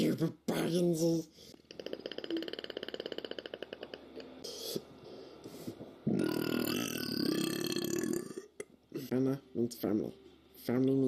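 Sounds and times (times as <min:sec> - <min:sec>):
person burping: 0:01.7 - 0:04.3, 0:06.1 - 0:08.7.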